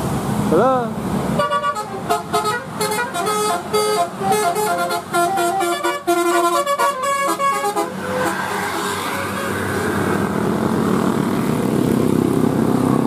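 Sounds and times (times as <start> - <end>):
bus horn playing a tune: 1.4 - 9.9.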